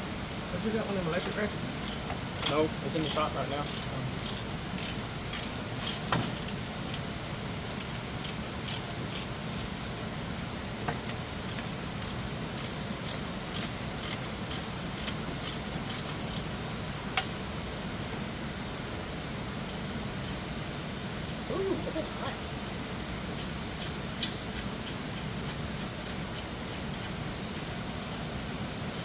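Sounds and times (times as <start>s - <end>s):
low background hum: 0.0s - 29.0s
hand ratchet clicking: 1.1s - 7.0s, 7.7s - 9.7s, 11.5s - 16.5s.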